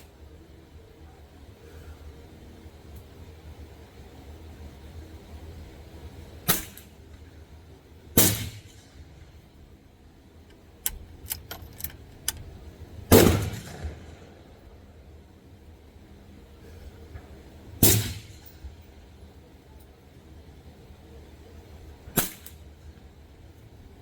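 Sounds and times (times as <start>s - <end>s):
loud gunshots echoing: 13.1s - 14.1s.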